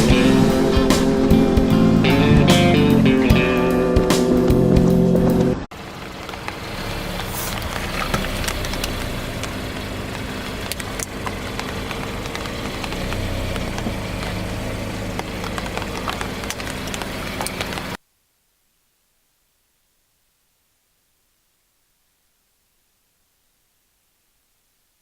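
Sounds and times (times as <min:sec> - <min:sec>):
car engine idling: 0:00.0 - 0:18.0
small clicks and crackles: 0:05.9 - 0:18.0.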